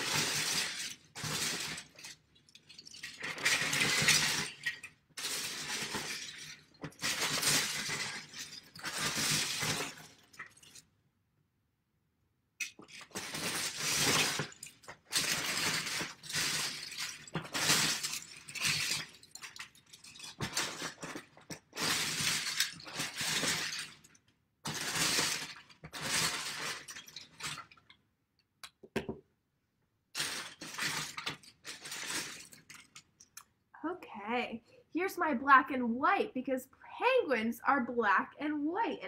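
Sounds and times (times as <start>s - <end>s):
plastic bricks clattering: 0.0s - 10.8s, 12.6s - 28.0s, 30.1s - 33.5s.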